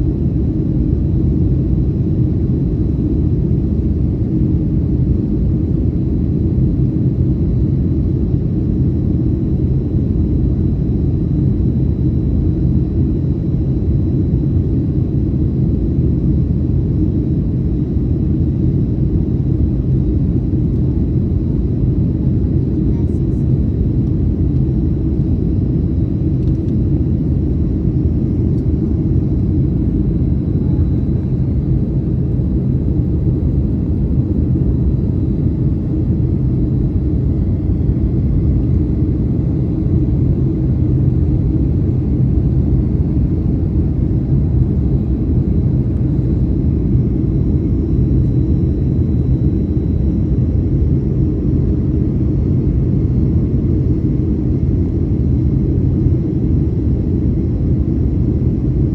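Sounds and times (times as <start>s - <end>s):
airliner cabin drone: 0.0s - 58.9s.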